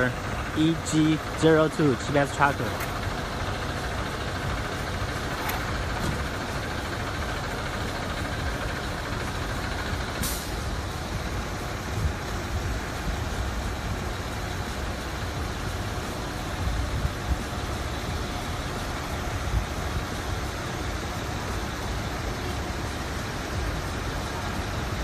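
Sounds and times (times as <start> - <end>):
street traffic noise: 0.0 - 25.0
short hiss: 10.2 - 10.6.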